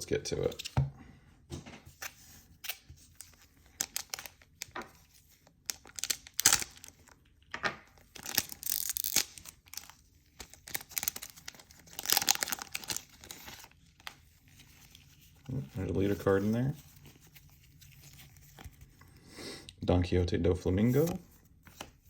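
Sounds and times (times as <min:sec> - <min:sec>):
foil pack tearing and crinkling: 0:05.6 - 0:07.0, 0:08.0 - 0:13.8.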